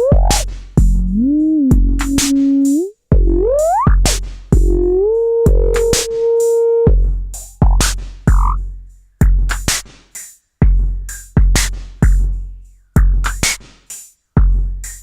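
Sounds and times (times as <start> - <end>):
crisp hi-hats: 0.0 - 15.0
held synth note: 1.0 - 3.8.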